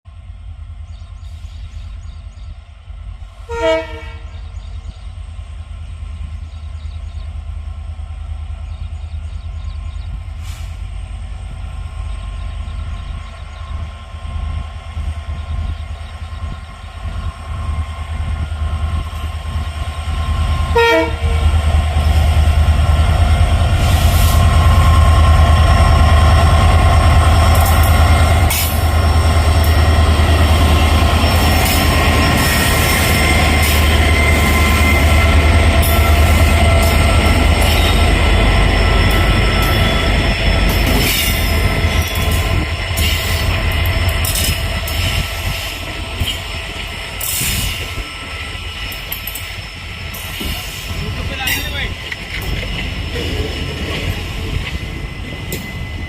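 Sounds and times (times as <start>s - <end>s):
rail and wheel noise: 0.0s - 56.0s
diesel locomotive engines rumbling: 0.1s - 56.0s
locomotive horn blast: 3.5s - 4.3s, 20.7s - 21.6s.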